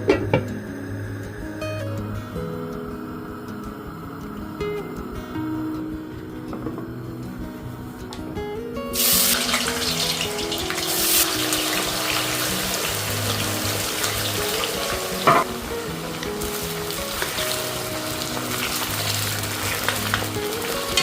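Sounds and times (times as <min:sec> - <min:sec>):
background music: 0:00.0 - 0:21.0
food sizzling in frying pan: 0:09.0 - 0:21.0.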